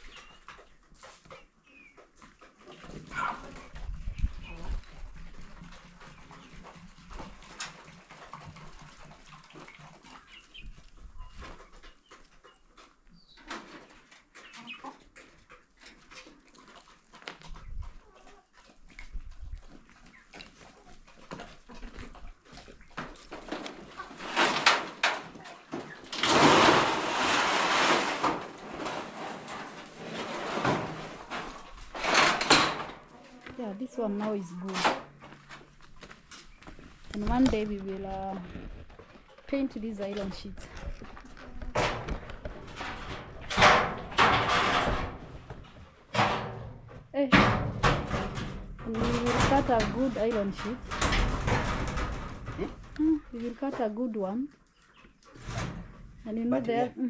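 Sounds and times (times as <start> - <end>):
chickens clucking: 0.0 - 57.0
metal roofing sheets scraping: 23.3 - 33.2, 41.4 - 53.6, 55.3 - 56.2.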